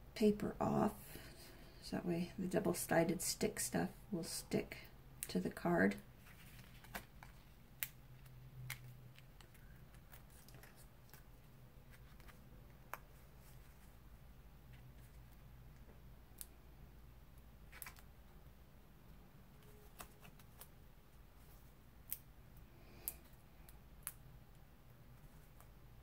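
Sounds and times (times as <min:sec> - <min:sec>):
paper crackling: 0:06.2 - 0:13.9.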